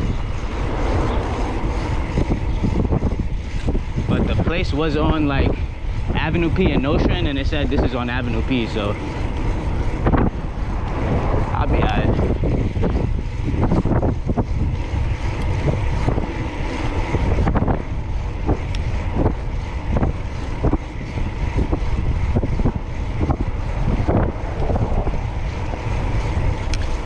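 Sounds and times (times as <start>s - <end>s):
wind buffeting microphone: 0.0s - 27.0s
bicycle knocks and rattles: 12.0s - 27.0s.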